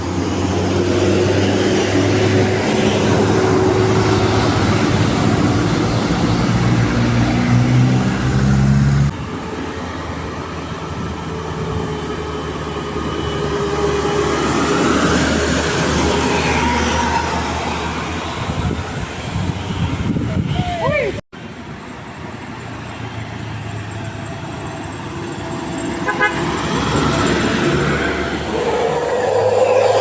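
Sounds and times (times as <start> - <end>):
vehicle noise: 0.0 - 30.0
multi-tone bus air horn: 26.0 - 26.8.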